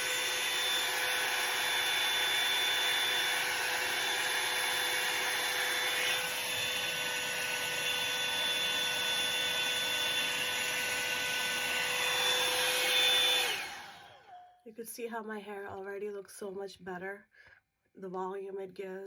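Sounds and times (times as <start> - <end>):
hair dryer brush whirring: 0.0 - 14.4.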